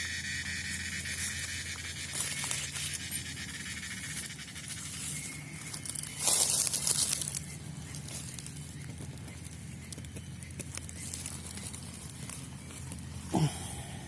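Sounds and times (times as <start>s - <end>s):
leaves and twigs rustling: 0.5s - 14.0s
twigs snapping: 1.2s - 3.2s, 4.6s - 13.4s.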